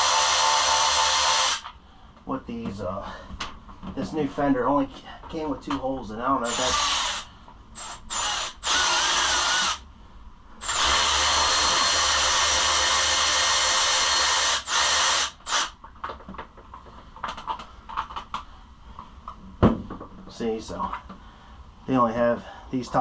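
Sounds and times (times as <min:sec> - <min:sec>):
cordless drill running: 0:00.0 - 0:01.7, 0:06.4 - 0:09.8, 0:10.6 - 0:15.8.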